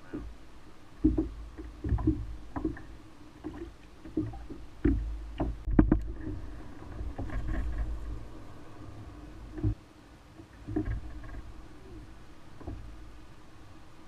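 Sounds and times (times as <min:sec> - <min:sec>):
low rumbles: 0:00.0 - 0:14.0
knocks against kayak hull: 0:01.0 - 0:06.4.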